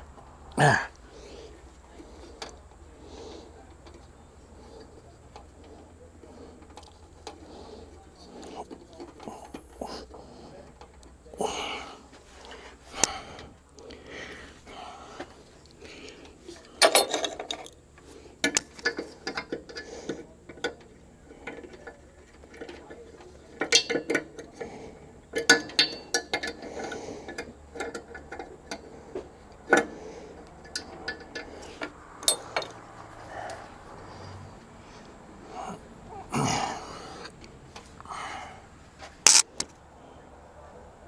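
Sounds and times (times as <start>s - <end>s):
hand tools clicking and knocking: 30.6s - 33.7s, 39.3s - 39.7s.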